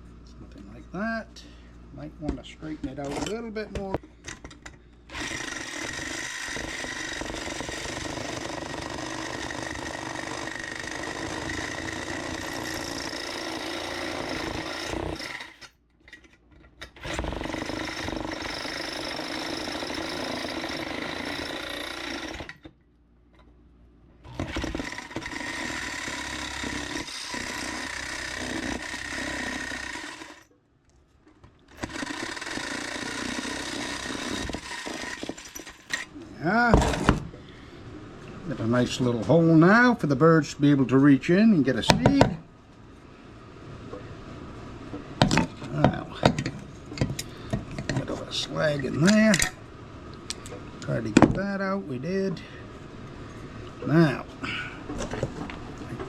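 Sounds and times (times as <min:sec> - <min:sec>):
power tool grinding sheet metal: 0:05.1 - 0:15.7, 0:24.4 - 0:30.4.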